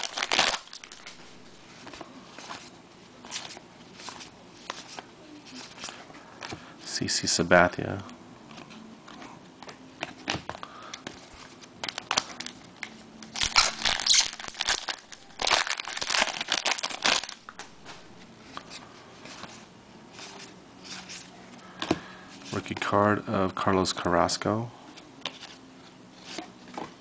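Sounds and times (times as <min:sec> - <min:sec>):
wrapper tearing and crinkling: 0:00.0 - 0:01.2, 0:13.3 - 0:18.0.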